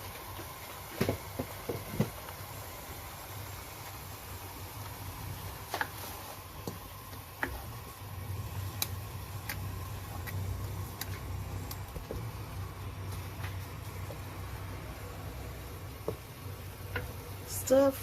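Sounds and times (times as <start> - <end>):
steady low hum: 1.1 - 18.0.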